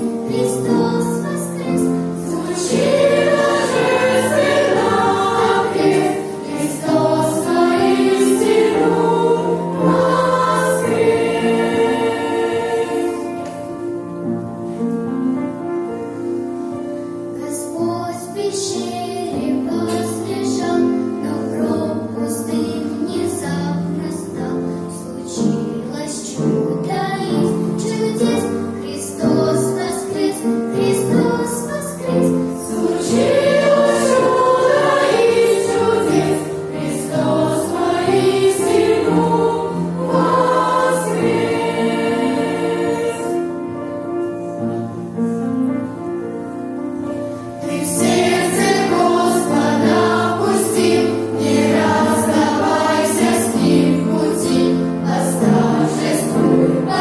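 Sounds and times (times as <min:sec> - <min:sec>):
children's choir singing: 0:00.0 - 0:14.2, 0:17.4 - 0:45.2, 0:47.6 - 0:57.0.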